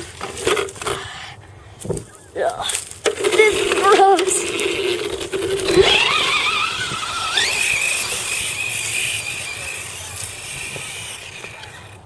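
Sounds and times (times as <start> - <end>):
electric motor whining: 3.1 - 12.0.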